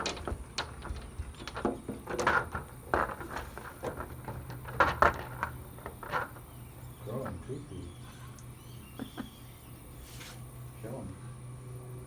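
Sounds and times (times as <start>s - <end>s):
short scrapes taps and rustles: 0.0s - 6.5s, 10.0s - 10.4s.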